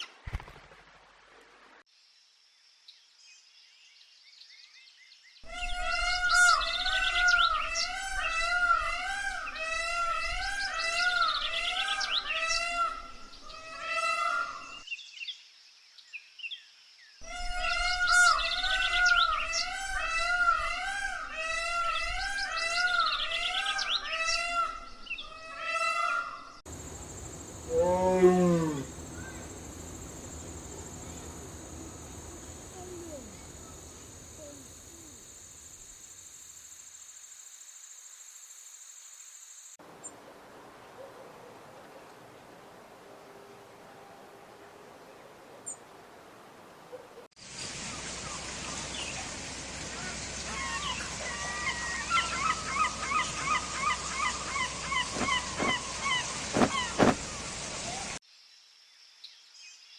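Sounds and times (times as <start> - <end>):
lower arched animal call: 17.2 - 35.2, 50.5 - 58.1
rising and falling animal calls: 17.2 - 35.2, 50.0 - 58.2.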